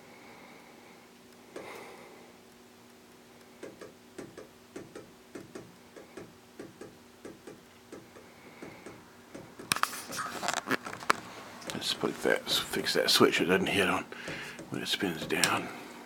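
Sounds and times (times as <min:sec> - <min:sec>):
ceiling fan hum: 0:00.0 - 0:16.0
fan switch ticking: 0:14.2 - 0:15.6.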